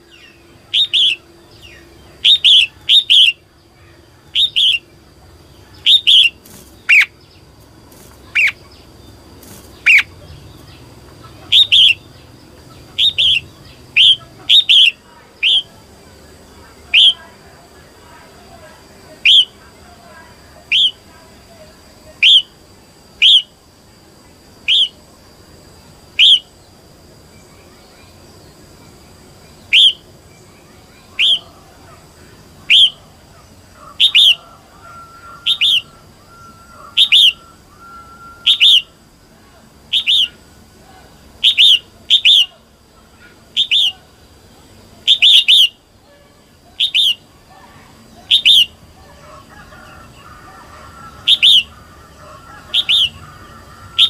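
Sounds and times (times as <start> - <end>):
bird sharp call notes: 0.0 - 3.4, 5.8 - 7.2, 9.8 - 10.2, 11.3 - 12.1, 12.9 - 15.7, 24.7 - 25.0, 26.2 - 26.4, 29.7 - 30.0, 31.2 - 31.6, 32.7 - 33.0, 33.8 - 39.0, 39.9 - 40.4, 41.4 - 42.6, 43.2 - 44.1, 45.1 - 46.2, 46.8 - 47.3, 48.3 - 54.0.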